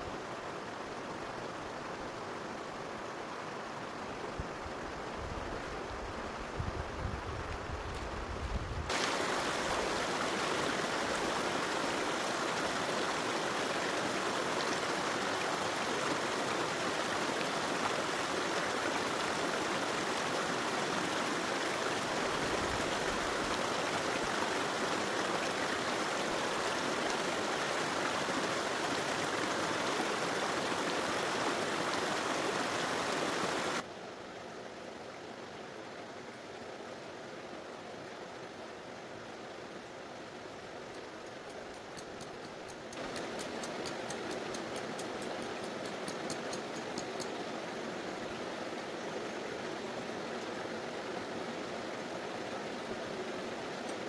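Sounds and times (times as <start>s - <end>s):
wind-like hiss with low rumble: 0.0s - 54.0s
river water rushing: 8.9s - 34.2s, 42.2s - 54.0s.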